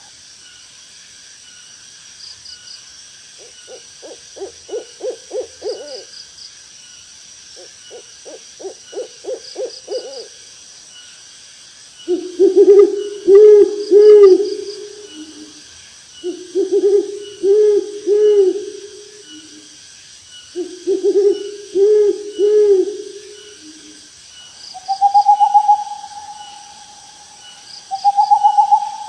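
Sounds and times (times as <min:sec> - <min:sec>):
high insect chirring: 0:00.0 - 0:29.0
owl hooting: 0:03.4 - 0:06.1, 0:07.6 - 0:10.4, 0:12.1 - 0:15.6, 0:16.2 - 0:19.6, 0:20.6 - 0:24.0, 0:24.7 - 0:29.0.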